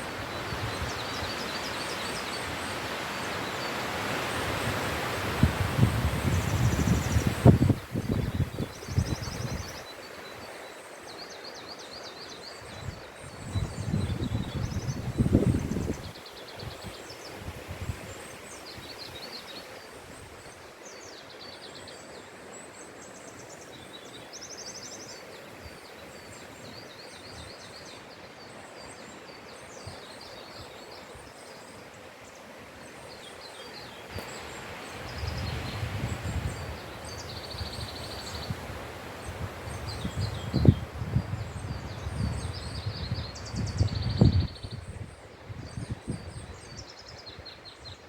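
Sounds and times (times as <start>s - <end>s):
wind rustling trees: 0.0s - 48.0s
wind gusts hitting microphone: 4.5s - 9.8s, 35.0s - 46.5s
small birds chirping: 32.8s - 48.0s.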